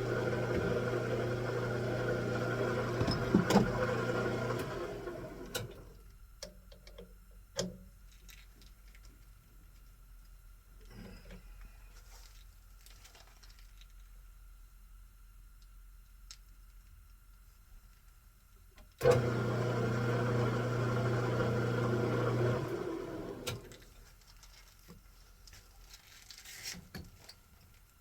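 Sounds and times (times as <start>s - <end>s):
lathe spinning down: 0.0s - 5.8s, 19.0s - 23.7s
metal lathe humming: 0.0s - 5.9s, 19.0s - 23.7s.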